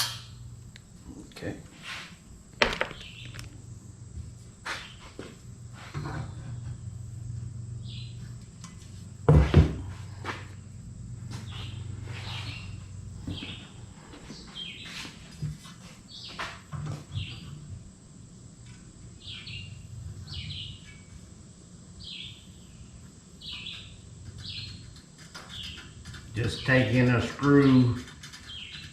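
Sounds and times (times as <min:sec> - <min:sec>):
low hum: 0:00.0 - 0:14.6
small birds chirping: 0:02.6 - 0:03.8, 0:07.7 - 0:08.8, 0:11.3 - 0:17.8, 0:18.6 - 0:28.9.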